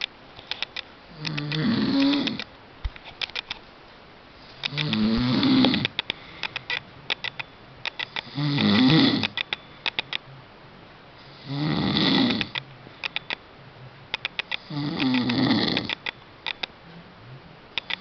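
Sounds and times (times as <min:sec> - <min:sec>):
pet snoring: 0:01.1 - 0:02.4, 0:04.6 - 0:05.9, 0:08.0 - 0:09.4, 0:11.2 - 0:12.6, 0:14.6 - 0:16.0.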